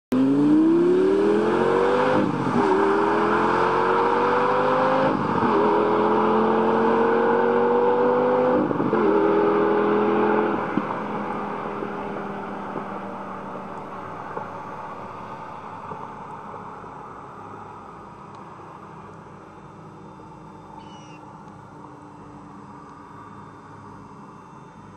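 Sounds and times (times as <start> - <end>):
sports car accelerating hard: 0.1 - 16.7.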